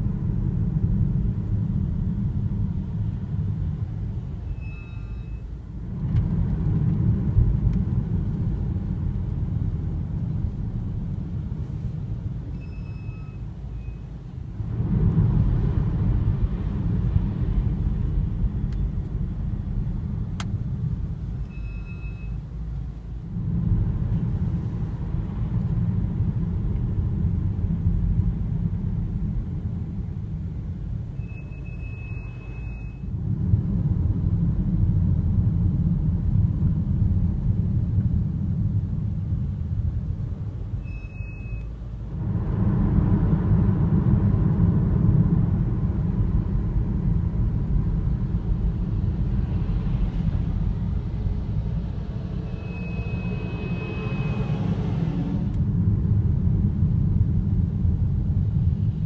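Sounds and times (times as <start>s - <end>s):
car driving rumble: 0.0s - 59.0s
brakes squealing: 4.4s - 5.6s, 31.1s - 33.2s, 48.8s - 55.6s.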